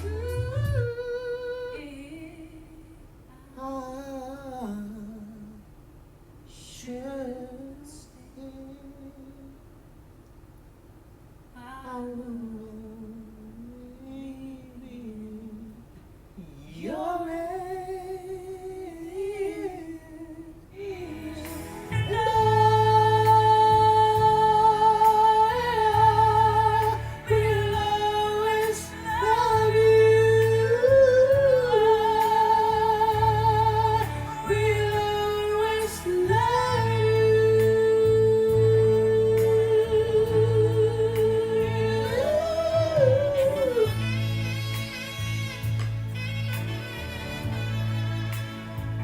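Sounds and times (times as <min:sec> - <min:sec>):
person singing with vibrato: 0:00.0 - 0:05.7, 0:11.6 - 0:48.9
backing music with pulsing bass: 0:21.0 - 0:49.0.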